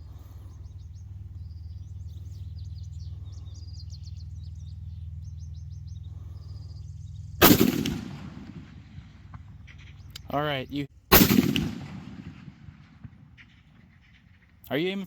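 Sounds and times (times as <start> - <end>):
steady low hum: 0.0 - 15.0
rifle shot: 7.4 - 10.1, 11.1 - 14.6.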